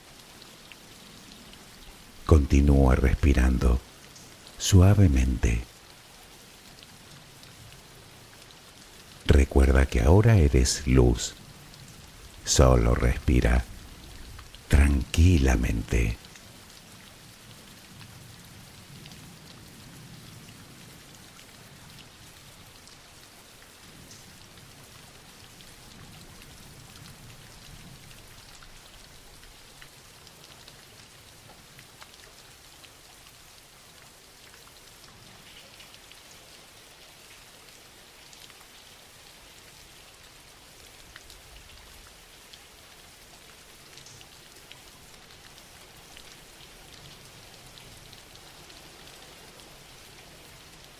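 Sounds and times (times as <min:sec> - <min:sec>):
soft rain falling: 0:00.0 - 0:50.9.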